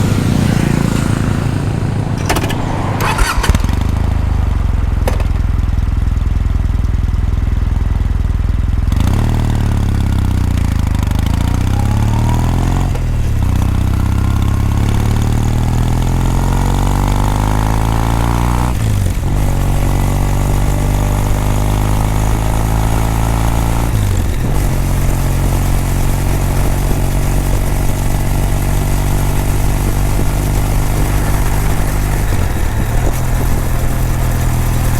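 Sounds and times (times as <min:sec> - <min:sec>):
motorcycle pulling away revving: 0:00.0 - 0:06.8, 0:08.0 - 0:34.9
motorcycle engine idling: 0:00.0 - 0:16.4, 0:24.0 - 0:34.9.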